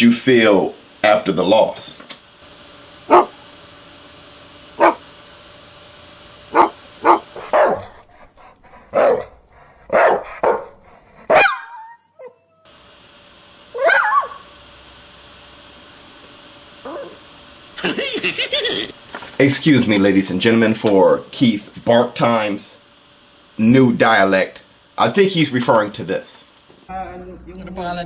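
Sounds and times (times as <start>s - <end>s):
dog barking: 3.1s - 3.4s, 4.8s - 5.0s, 6.5s - 7.9s, 8.9s - 12.0s, 13.7s - 14.4s
dog whining: 3.1s - 3.4s, 4.8s - 5.0s, 6.6s - 7.2s, 11.3s - 12.7s, 16.8s - 17.2s.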